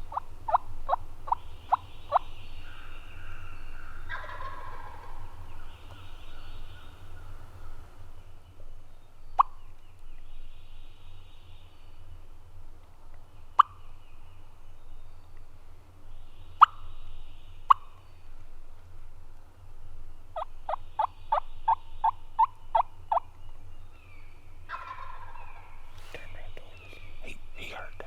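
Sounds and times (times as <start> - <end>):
turkey gobble: 0.0 - 7.9, 13.6 - 13.8, 24.7 - 27.4
turkey clucks: 0.0 - 8.0, 13.6 - 13.8, 16.6 - 16.9, 17.7 - 17.9, 24.7 - 28.0.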